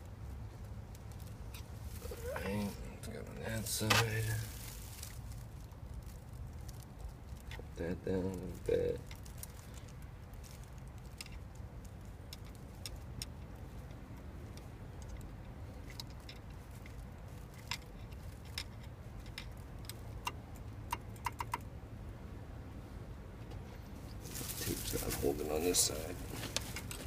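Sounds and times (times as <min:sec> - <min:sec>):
low background rumble: 0:00.0 - 0:27.0
light clicks of small parts: 0:08.3 - 0:21.7.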